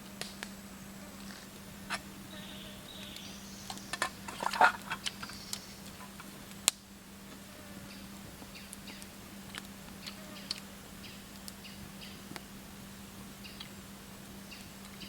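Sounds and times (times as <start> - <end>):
steady low hum: 0.0 - 15.0
faint bird or insect chirps: 1.8 - 6.9, 7.5 - 9.2, 9.8 - 12.3, 13.4 - 13.8, 14.4 - 15.0.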